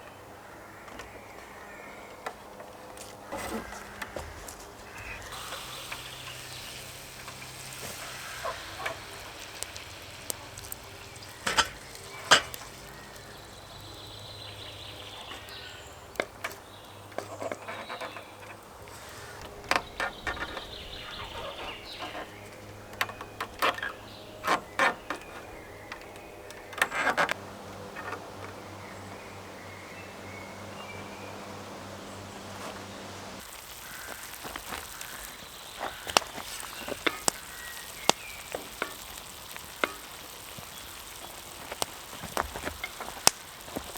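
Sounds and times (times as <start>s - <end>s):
wood knocking with hand tools: 16.2s - 28.7s.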